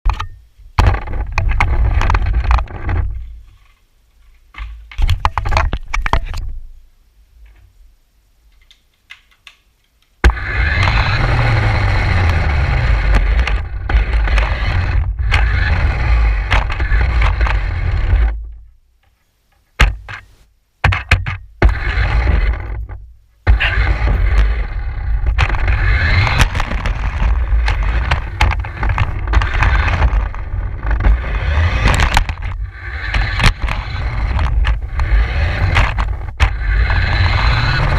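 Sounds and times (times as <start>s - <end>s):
radio-controlled car rattling over ground: 0.1s - 3.7s, 10.2s - 18.7s, 21.2s - 37.9s.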